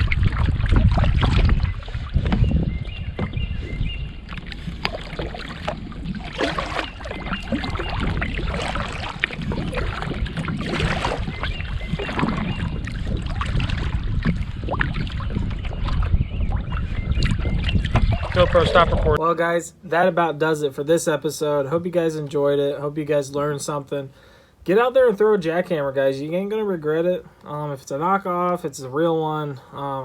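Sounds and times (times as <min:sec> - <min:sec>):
wind rumble on microphone: 0:00.0 - 0:19.2
knocks and clicks from hull: 0:00.1 - 0:03.5.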